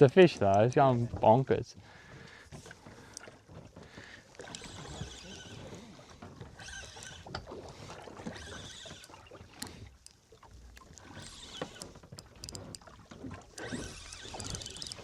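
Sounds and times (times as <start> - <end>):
gear knocks and clicks: 8.3 - 15.0.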